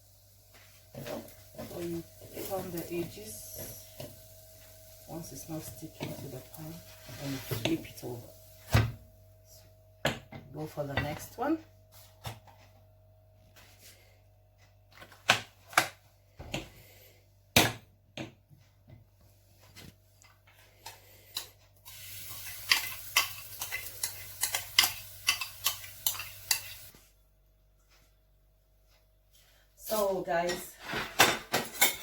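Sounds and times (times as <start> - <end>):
pancake sizzling in oil: 0.0 - 7.6, 21.8 - 27.0
spatula scraping frying pan: 21.3 - 26.9.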